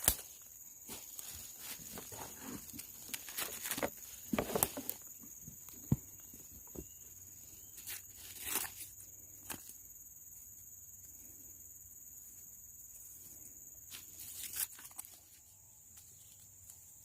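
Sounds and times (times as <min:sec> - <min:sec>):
dry brush crackling and rustling: 0:00.0 - 0:05.1, 0:07.8 - 0:09.6.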